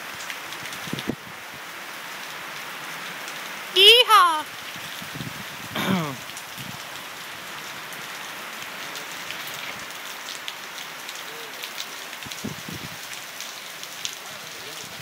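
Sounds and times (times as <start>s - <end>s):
heavy rain pouring: 0.0s - 15.0s
person whooping: 3.8s - 4.4s.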